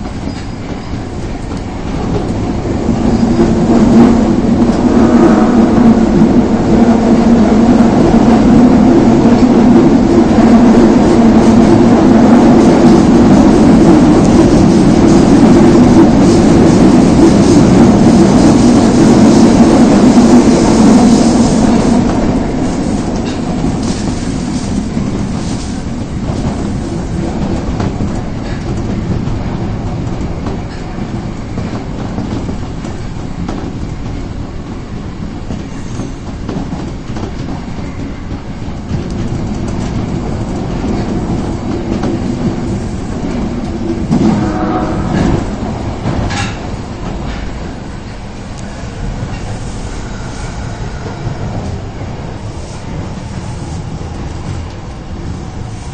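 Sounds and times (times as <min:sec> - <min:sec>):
subway train rumble: 0:00.0 - 0:55.9
wheels clacking over rail joints: 0:35.0 - 0:48.2.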